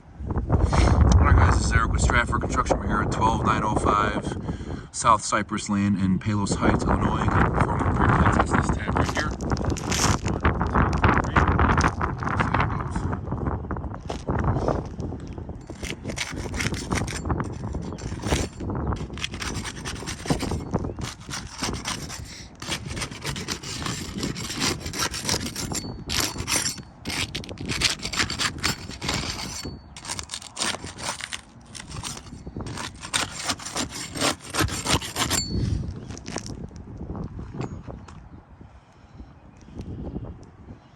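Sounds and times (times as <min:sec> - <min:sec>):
pry tool scraping roof shingles: 0:09.0 - 0:10.4, 0:15.7 - 0:36.5.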